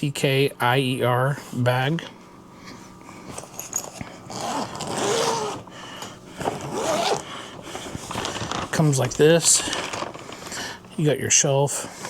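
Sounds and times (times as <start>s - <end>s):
fabric bag rustling and scraping: 3.7s - 5.7s, 6.4s - 10.9s.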